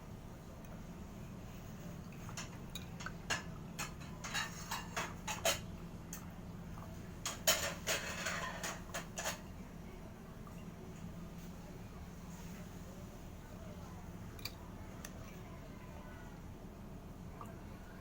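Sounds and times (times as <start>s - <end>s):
kitchen utensils clinking: 2.4s - 6.3s, 7.2s - 9.5s.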